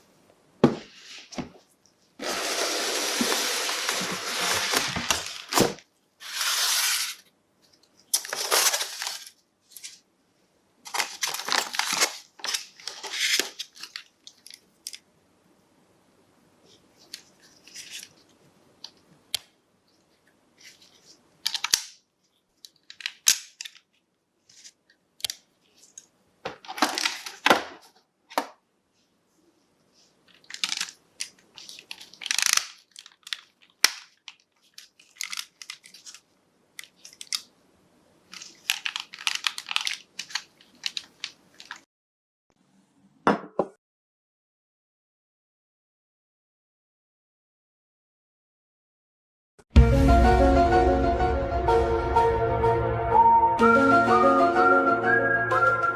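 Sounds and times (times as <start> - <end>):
packaging rustling and crinkling: 2.2 - 10.0, 10.9 - 15.0, 17.0 - 18.3, 25.6 - 27.9, 30.2 - 37.5, 38.3 - 41.9.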